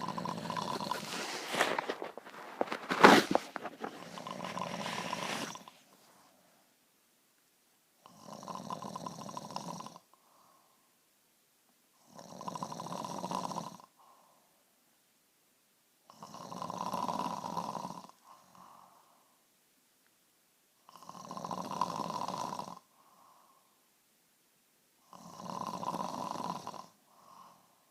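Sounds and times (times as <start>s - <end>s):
woman snoring heavily: 0.0s - 2.0s, 3.8s - 5.7s, 8.0s - 10.1s, 12.0s - 14.0s, 16.1s - 18.8s, 20.9s - 22.9s, 25.0s - 27.7s.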